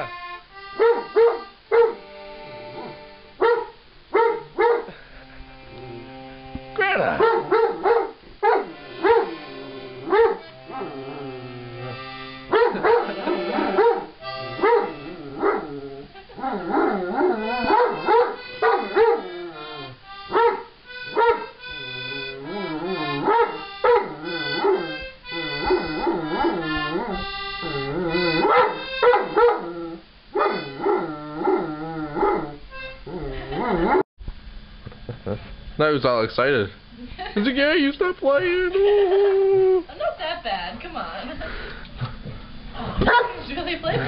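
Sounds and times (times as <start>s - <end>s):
instrument playing held notes: 0.0s - 3.4s, 4.9s - 7.2s, 8.6s - 34.0s
dog barking: 0.8s - 2.1s, 2.7s - 5.0s, 7.2s - 9.4s, 10.0s - 10.5s, 12.5s - 15.7s, 17.6s - 19.4s, 20.3s - 21.6s, 23.2s - 25.0s, 25.6s - 27.2s, 28.1s - 29.7s, 30.4s - 31.6s, 32.2s - 32.6s, 43.0s - 43.5s.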